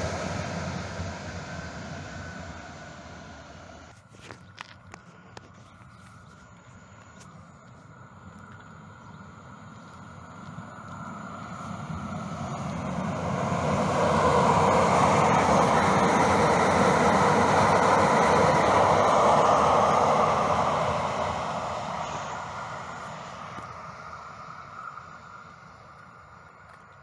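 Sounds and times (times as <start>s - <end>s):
vehicle passing by: 0.0s - 3.9s.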